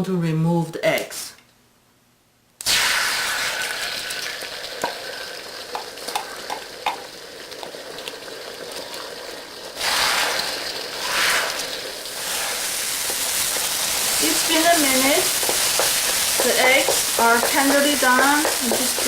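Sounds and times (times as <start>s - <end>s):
eggs sizzling in hot oil: 2.6s - 19.0s
utensil clicking against wok: 15.3s - 19.0s.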